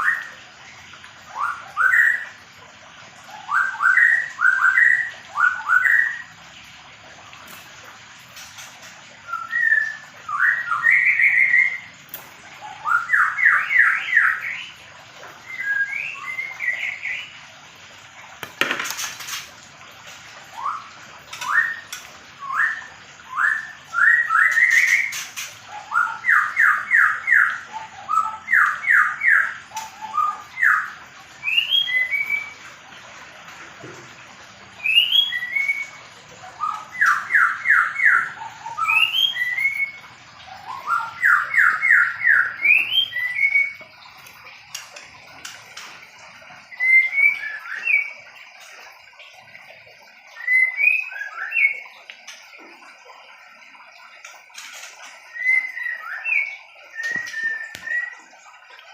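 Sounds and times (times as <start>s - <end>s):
bird whistling calls: 9.3s - 11.9s, 15.4s - 17.3s, 20.6s - 32.6s, 34.8s - 36.0s, 36.6s - 44.0s, 46.6s - 48.2s, 50.3s - 52.0s, 55.3s - 58.3s.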